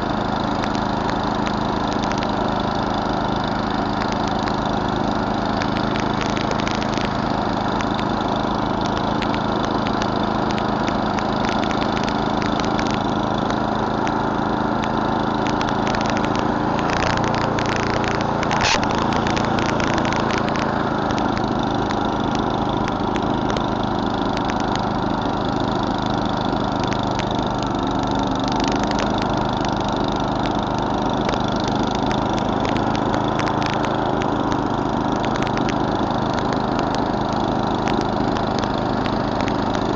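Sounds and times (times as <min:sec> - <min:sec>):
snowblower engine running: 0:00.0 - 0:39.9
sharp clicks: 0:05.5 - 0:14.2, 0:14.8 - 0:24.9, 0:28.4 - 0:39.9.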